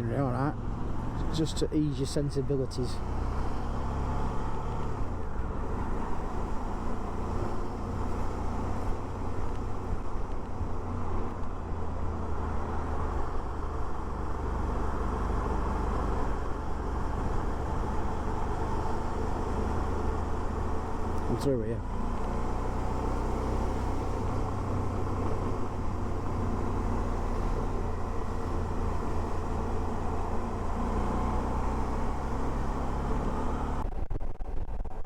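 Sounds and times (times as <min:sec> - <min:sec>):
road noise: 0:00.0 - 0:35.0.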